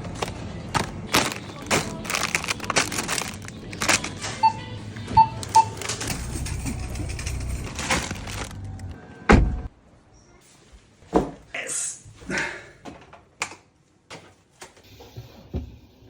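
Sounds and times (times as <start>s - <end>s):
packaging rustling and clicking: 0.0s - 4.4s, 5.4s - 9.0s.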